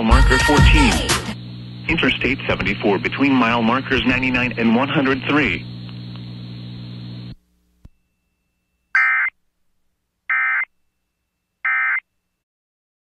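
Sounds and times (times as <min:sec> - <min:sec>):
hum and hiss: 0:00.0 - 0:11.6
screechy digital data bursts: 0:09.0 - 0:09.3.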